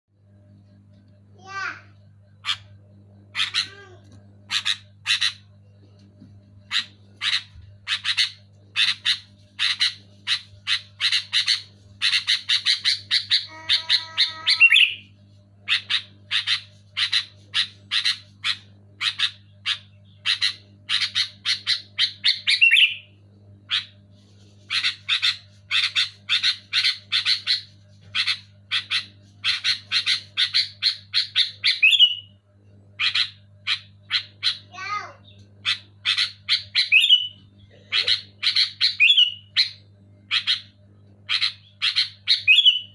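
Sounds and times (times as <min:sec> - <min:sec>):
faint low hum: 0:00.1 - 0:42.9
bird calling sharp notes: 0:06.7 - 0:15.0.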